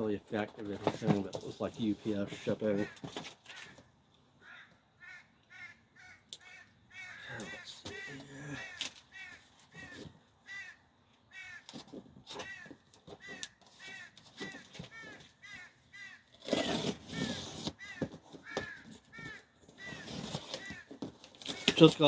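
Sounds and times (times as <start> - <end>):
cardboard rustling and tearing: 0.4 - 3.8, 16.3 - 22.0.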